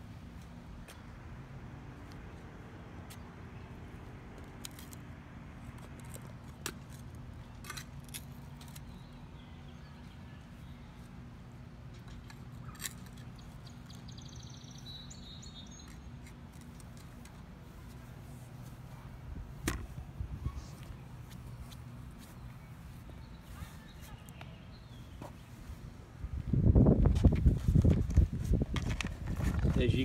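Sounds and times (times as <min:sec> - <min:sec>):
bird chirping: 0:12.6 - 0:16.2.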